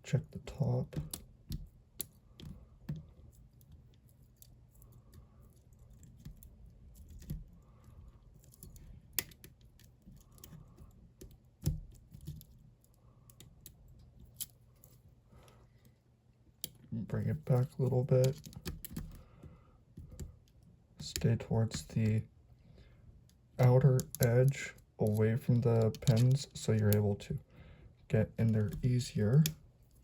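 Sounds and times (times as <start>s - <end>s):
lock picks clicking and scraping: 0.6s - 15.1s, 16.6s - 19.2s, 23.2s - 27.3s, 28.4s - 30.0s.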